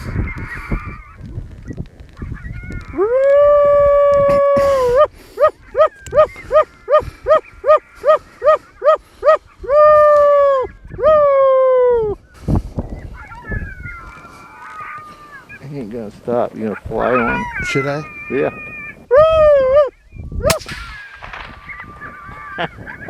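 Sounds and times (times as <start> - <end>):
coyote howls: 13.1 - 15.6, 16.7 - 20.0
coyote yips: 13.1 - 15.6, 16.8 - 22.9.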